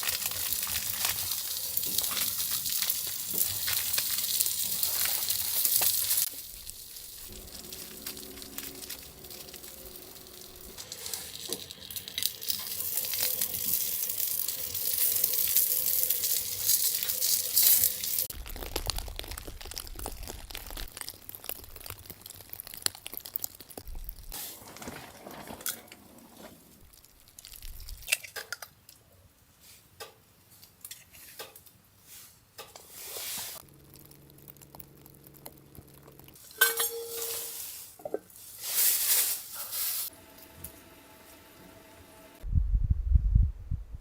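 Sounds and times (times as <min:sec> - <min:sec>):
rustling: 0:00.0 - 0:28.2, 0:35.9 - 0:40.1
small hard objects clinking: 0:00.0 - 0:29.0, 0:33.6 - 0:40.1.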